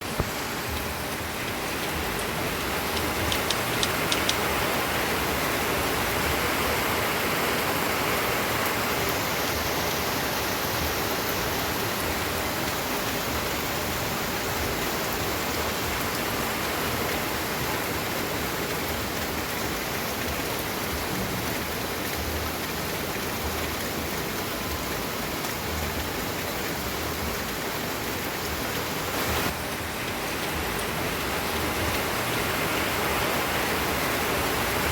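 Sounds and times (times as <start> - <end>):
steady rain hiss: 0.0 - 34.9
sharp drip ticks: 0.2 - 4.6.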